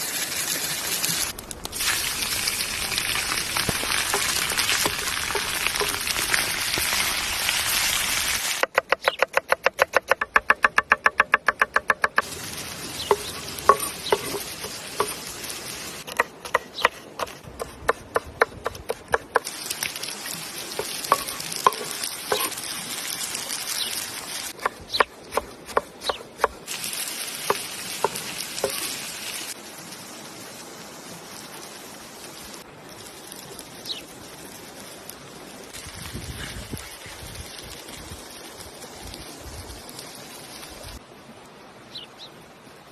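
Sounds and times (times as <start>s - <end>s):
food sizzling in a pan: 0.0s - 8.6s, 12.2s - 16.1s, 19.4s - 24.6s, 26.7s - 30.7s.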